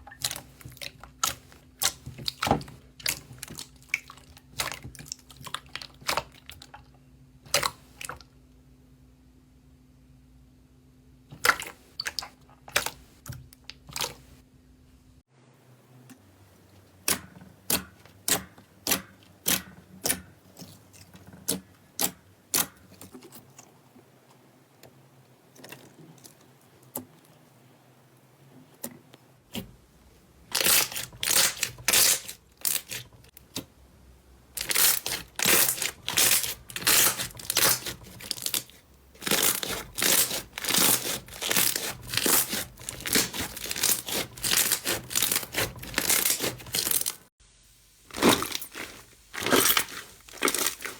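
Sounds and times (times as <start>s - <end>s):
slime crackling: 30.5s - 33.2s, 34.6s - 47.3s, 48.1s - 50.9s
slime popping: 48.1s - 50.9s.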